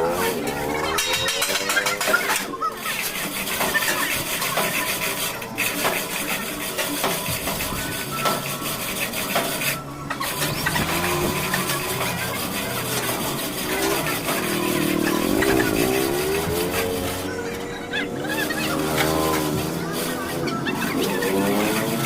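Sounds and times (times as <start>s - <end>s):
knocks and clanks: 0.3s - 17.8s
engine running: 8.3s - 22.0s.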